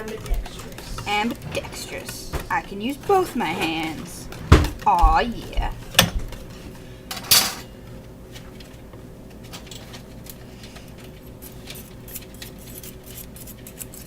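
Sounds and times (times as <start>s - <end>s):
fork scraping metal bowl: 0.7s - 5.0s.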